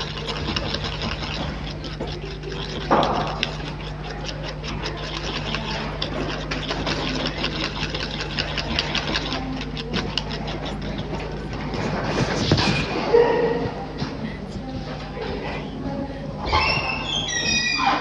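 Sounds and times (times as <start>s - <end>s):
small motor tool humming and ticking: 0.0s - 11.8s.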